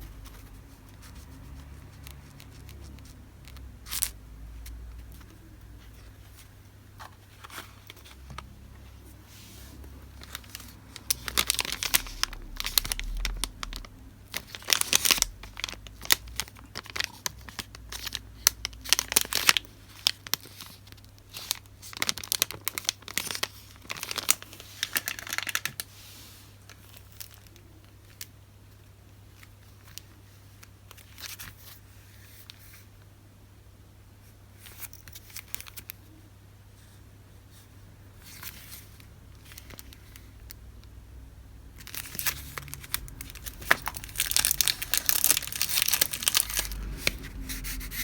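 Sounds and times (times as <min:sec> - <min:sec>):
packaging crinkling and rustling: 0:00.0 - 0:28.3, 0:29.3 - 0:32.7, 0:38.2 - 0:40.9, 0:41.7 - 0:48.0.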